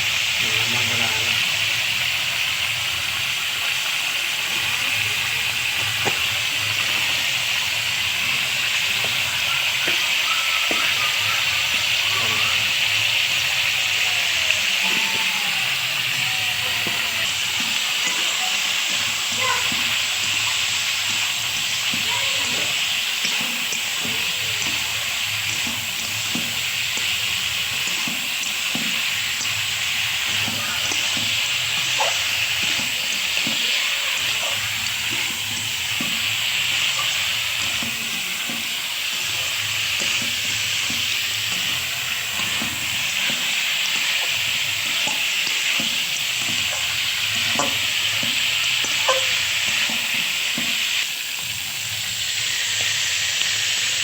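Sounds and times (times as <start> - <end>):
meat sizzling in oil: 0.0 - 54.0
spoon scraping a pot: 22.6 - 50.9.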